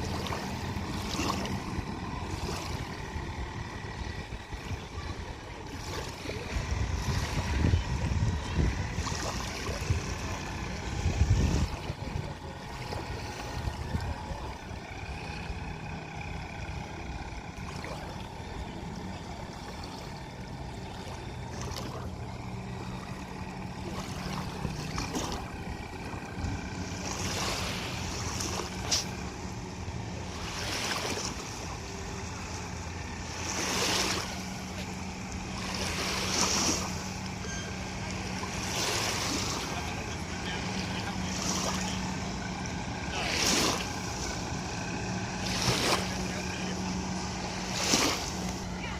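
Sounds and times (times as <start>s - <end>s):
wind buffeting microphone: 0.0s - 17.6s
model boat motor whine: 0.0s - 48.9s.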